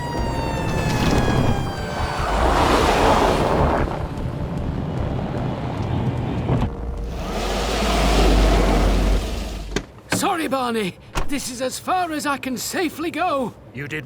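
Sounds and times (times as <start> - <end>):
low rumble: 0.3 - 9.8.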